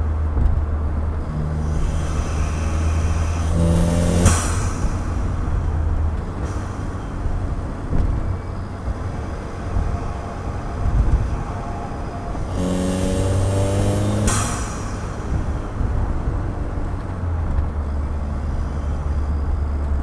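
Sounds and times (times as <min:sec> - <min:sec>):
car engine rumbling: 0:00.0 - 0:20.0
road noise: 0:00.0 - 0:20.0
sharp burst of noise: 0:01.2 - 0:16.8.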